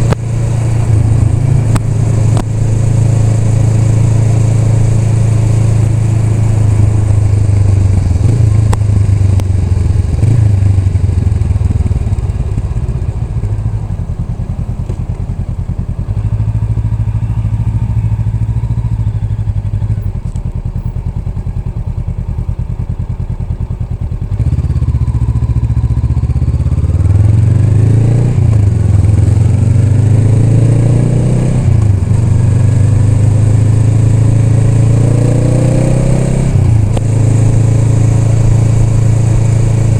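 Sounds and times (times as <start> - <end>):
motorcycle shifting up through gears: 0.0 - 22.6, 26.6 - 39.9
motorcycle engine running: 0.0 - 39.9.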